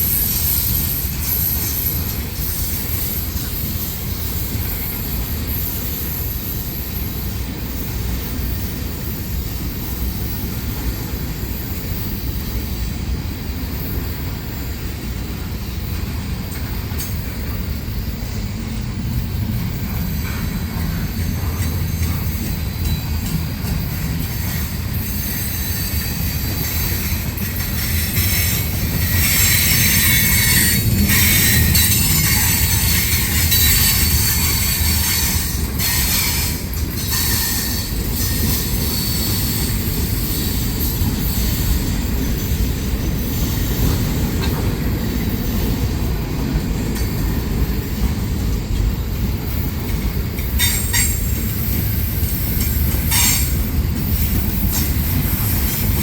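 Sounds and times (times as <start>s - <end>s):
train wheels rumbling on rail: 0.0s - 56.0s
wheel squeal: 20.2s - 43.9s.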